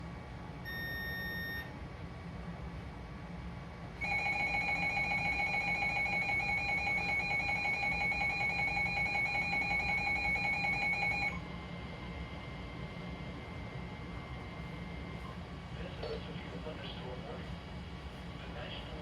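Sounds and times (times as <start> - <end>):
shrill emergency alert tone: 0.7 - 1.7, 4.0 - 11.4.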